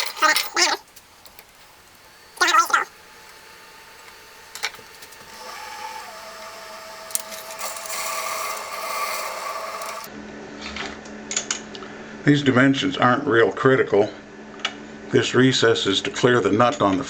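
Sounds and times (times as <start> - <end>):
clicks: 0.0 - 10.1
lathe whine: 0.9 - 10.1.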